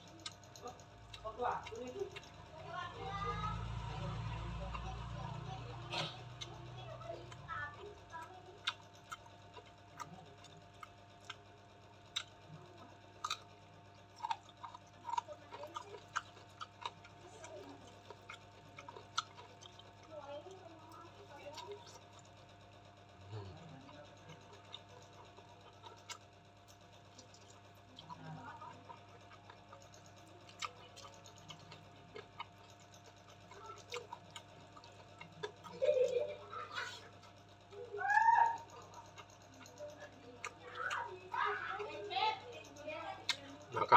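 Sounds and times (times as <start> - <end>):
person chewing: 0.0 - 2.4, 3.6 - 11.5, 12.1 - 20.1, 21.3 - 22.3, 23.4 - 37.8, 43.2 - 43.9
faint steady hum: 0.0 - 43.9.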